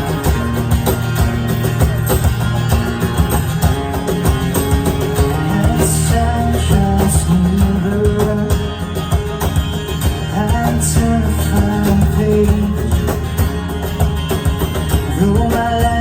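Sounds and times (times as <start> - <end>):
live band playing: 0.0 - 16.0.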